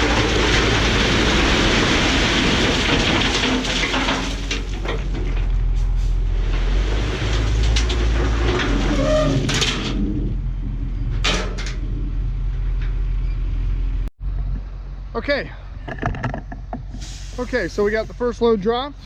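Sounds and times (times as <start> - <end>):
scraping knocks: 0.0 - 5.8, 6.6 - 13.2
rubble rattling out of truck bed: 0.0 - 13.2
dump truck engine running: 0.0 - 19.0.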